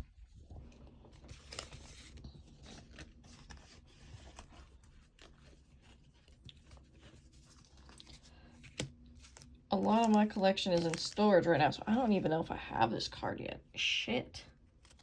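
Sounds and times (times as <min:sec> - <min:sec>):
trading cards being handled: 0:00.3 - 0:11.3.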